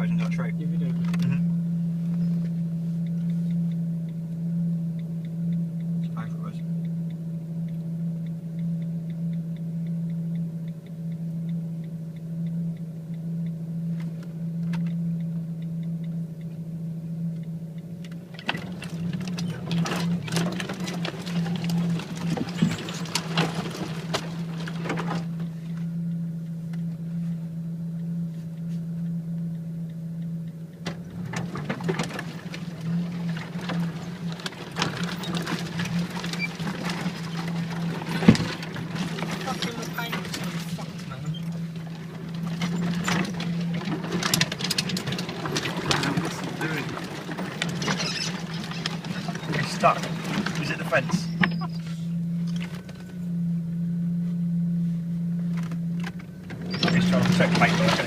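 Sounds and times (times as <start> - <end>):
vehicle engine droning: 0.0 - 58.0
branches crackling and scraping: 18.6 - 25.9, 31.5 - 53.3, 55.0 - 58.0.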